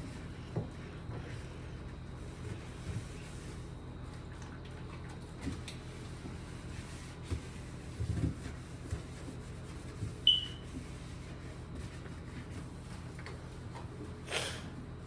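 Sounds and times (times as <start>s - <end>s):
smoke alarm chirp: 10.2s - 10.7s.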